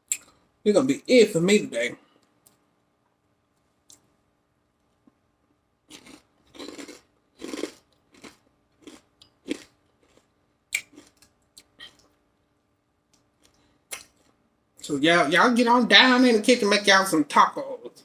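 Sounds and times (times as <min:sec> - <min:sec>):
chewing and crunching lettuce: 0:05.9 - 0:11.7.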